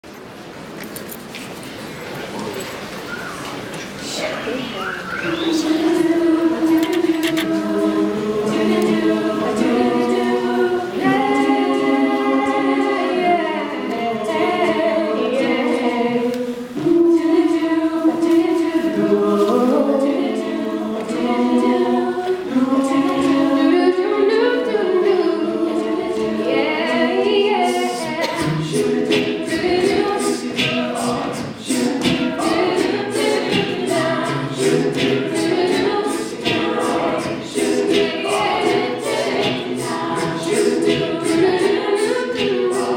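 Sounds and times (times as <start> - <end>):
a cappella group singing in harmony: 5.2 - 42.9
percussive beat: 28.2 - 42.9.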